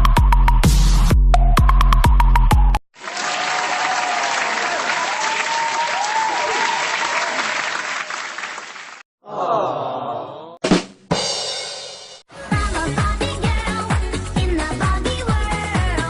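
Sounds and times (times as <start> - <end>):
crowd applause and cheering: 3.0 - 9.0.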